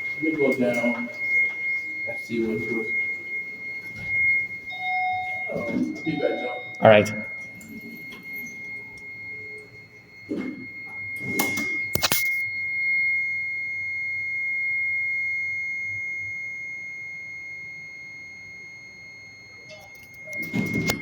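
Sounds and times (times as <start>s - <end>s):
high-pitched alarm tone: 0.0s - 21.0s
sharp click: 11.4s - 12.4s.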